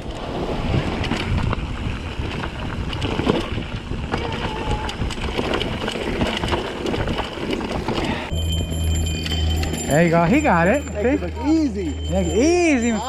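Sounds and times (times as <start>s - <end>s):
wind buffeting microphone: 0.0s - 8.3s
mountain bike rattling on rocks: 0.0s - 13.0s.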